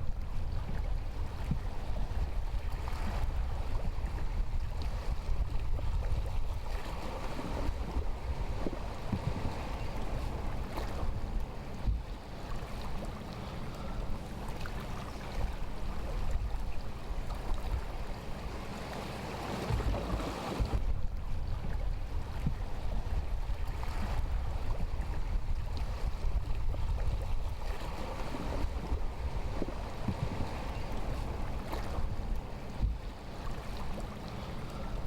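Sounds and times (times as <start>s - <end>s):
wind buffeting microphone: 0.0s - 12.6s, 19.6s - 33.2s
water rushing: 17.2s - 20.9s.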